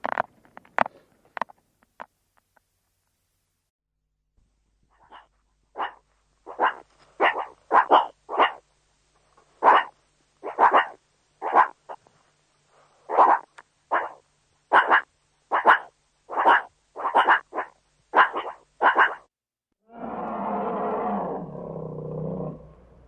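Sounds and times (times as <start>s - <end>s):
animal barking: 5.0s - 8.6s, 9.6s - 12.1s, 13.0s - 19.3s.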